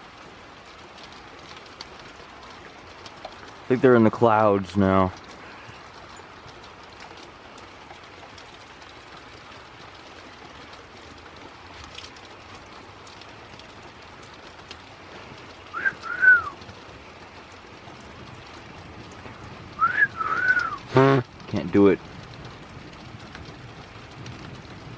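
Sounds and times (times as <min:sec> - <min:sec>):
rain falling: 0:00.0 - 0:24.9
two-note whistle: 0:15.8 - 0:16.6, 0:19.8 - 0:20.8.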